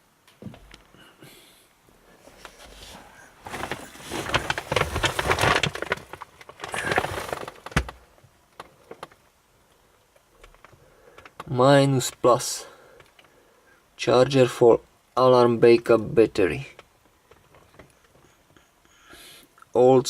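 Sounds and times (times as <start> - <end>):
hard objects rattling and clicking: 3.5 - 8.0.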